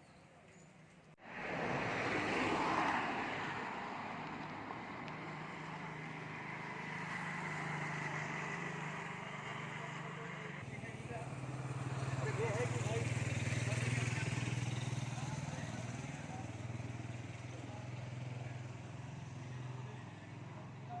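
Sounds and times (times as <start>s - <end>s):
road noise: 0.0s - 21.0s
vehicle engine running: 5.3s - 21.0s.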